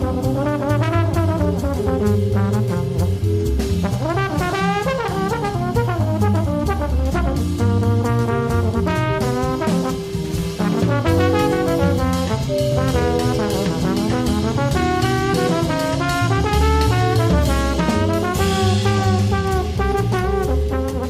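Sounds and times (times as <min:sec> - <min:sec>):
drum kit and cymbals: 0:00.0 - 0:21.0
piano: 0:00.0 - 0:21.0
trombone: 0:00.0 - 0:21.0
walking acoustic bass: 0:00.0 - 0:21.0
vibraphone: 0:10.4 - 0:14.6.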